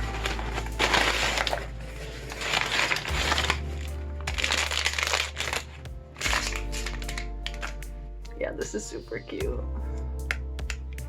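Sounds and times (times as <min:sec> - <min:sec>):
packaging crinkling: 0:00.0 - 0:07.8
background music with bass: 0:00.0 - 0:11.0.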